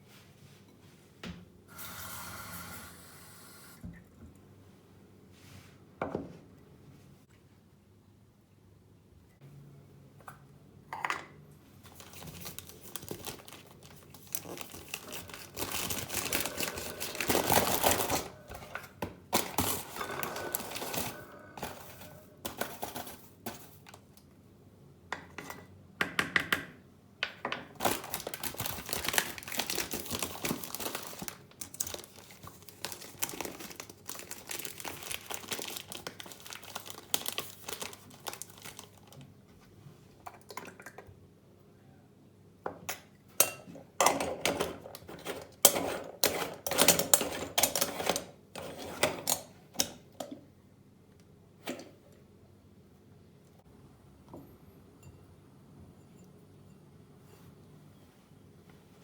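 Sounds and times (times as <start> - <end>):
packaging crinkling: 11.9 - 18.8, 19.4 - 24.1, 27.8 - 39.2
packaging tearing: 12.0 - 18.4, 27.8 - 39.2.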